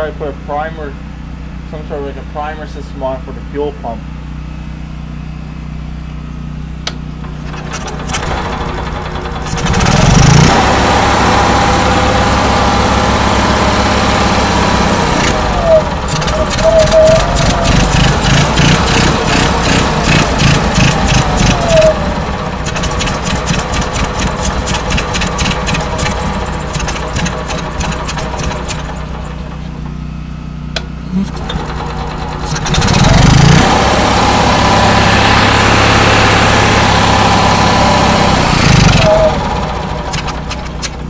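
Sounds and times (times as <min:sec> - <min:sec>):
generator engine running roughly: 0:06.8 - 0:41.0
rapid regular ticking: 0:22.6 - 0:28.8.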